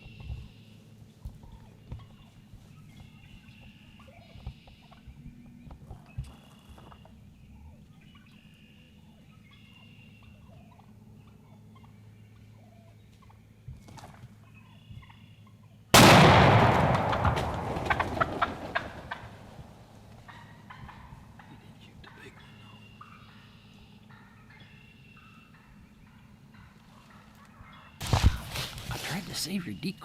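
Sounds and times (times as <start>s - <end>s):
wild turkeys calling: 0.0s - 30.0s
echoing gunshot: 16.0s - 19.8s.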